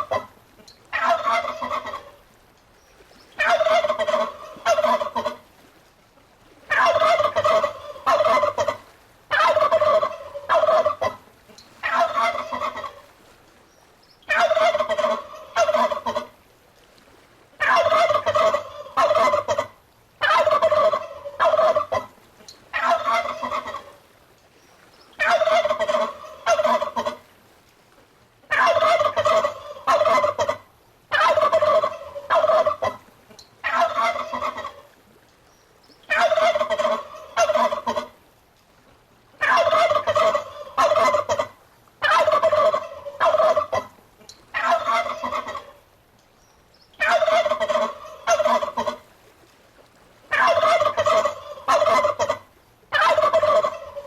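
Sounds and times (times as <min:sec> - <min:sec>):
turkeys gobbling: 0:00.0 - 0:02.2, 0:03.4 - 0:05.4, 0:06.7 - 0:11.2, 0:11.8 - 0:13.1, 0:14.3 - 0:16.3, 0:17.6 - 0:24.0, 0:25.2 - 0:27.2, 0:28.5 - 0:33.0, 0:33.6 - 0:35.0, 0:36.1 - 0:38.2, 0:39.4 - 0:45.8, 0:47.0 - 0:49.0, 0:50.3 - 0:54.0.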